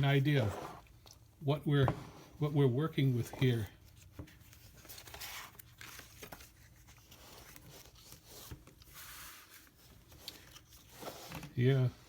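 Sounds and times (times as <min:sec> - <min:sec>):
book pages turning: 0:03.1 - 0:12.0.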